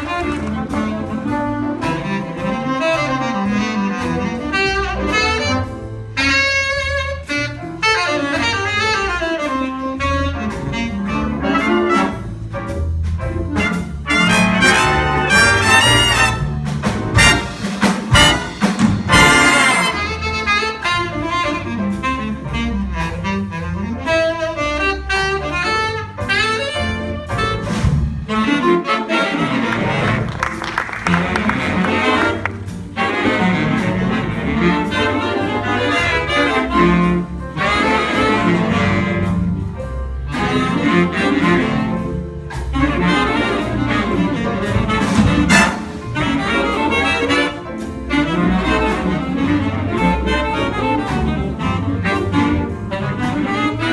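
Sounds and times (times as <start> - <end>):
saxophones and brass: 0.0 - 12.6, 13.4 - 53.9
bass: 0.0 - 53.9
jazz band playing: 0.0 - 53.9.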